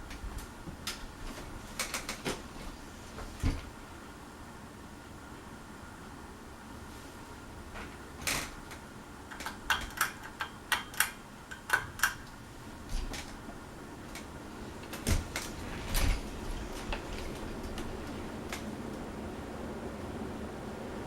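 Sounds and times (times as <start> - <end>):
ceiling fan humming: 0.0 - 21.0
sharp clicks and knocks: 8.2 - 13.5.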